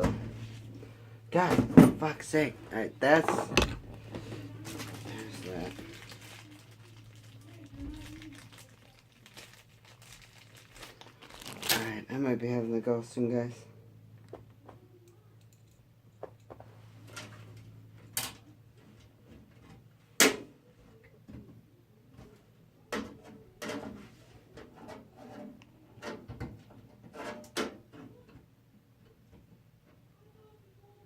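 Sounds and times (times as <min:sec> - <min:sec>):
low steady hum: 0:00.0 - 0:27.1
computer parts knocking and rattling: 0:03.2 - 0:04.2.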